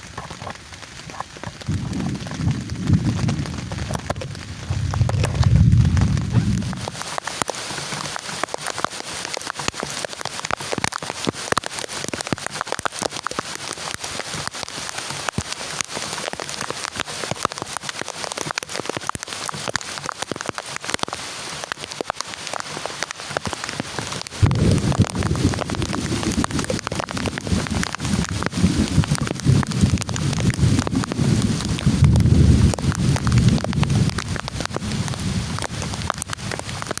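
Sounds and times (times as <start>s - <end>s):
heavy rain falling: 0.0s - 37.0s
low rumble: 1.7s - 7.0s, 24.4s - 30.1s.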